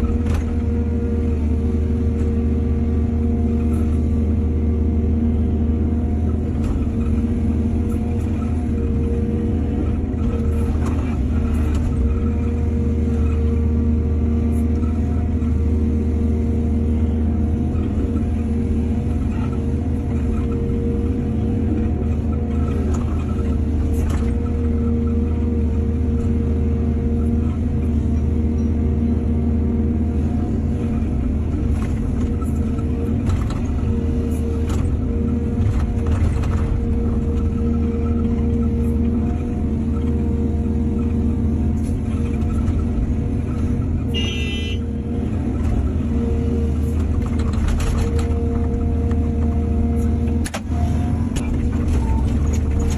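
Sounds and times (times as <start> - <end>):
excavator diesel engine running: 0.0 - 52.9.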